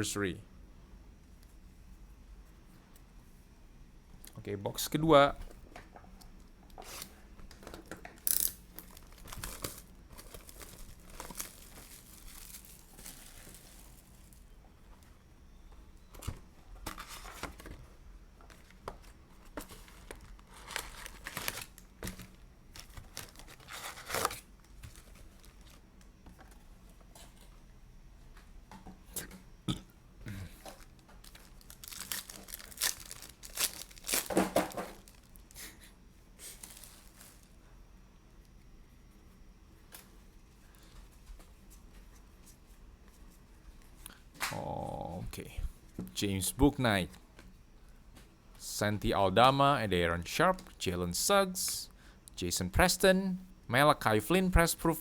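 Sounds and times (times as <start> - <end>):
plastic wrapping tearing and crinkling: 8.8 - 14.4, 19.7 - 25.8, 30.7 - 35.6, 36.4 - 37.5.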